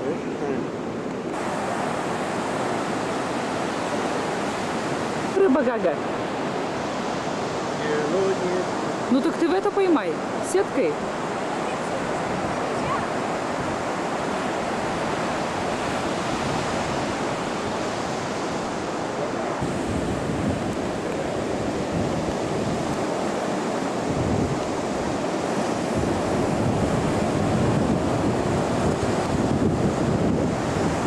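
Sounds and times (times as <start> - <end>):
ocean surf washing: 0.0 - 31.0
wind buffeting microphone: 0.0 - 31.0.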